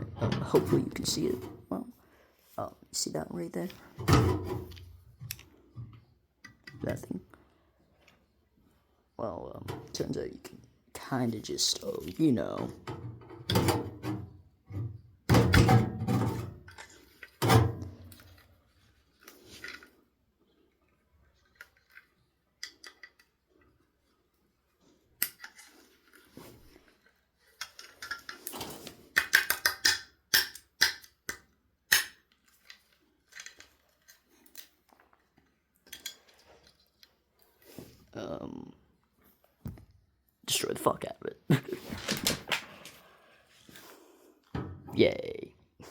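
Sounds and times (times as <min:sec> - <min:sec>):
metal clicks scrapes and clatters: 0:27.5 - 0:30.7
tools breaking hard drive part: 0:29.2 - 0:31.2, 0:31.9 - 0:32.2.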